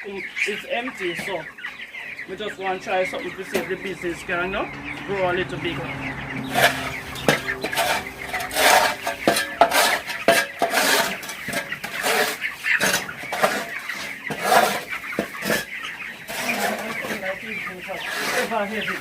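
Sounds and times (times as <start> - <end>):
young chickens clucking: 0.0 - 19.0
clattering and scraping: 6.1 - 17.4.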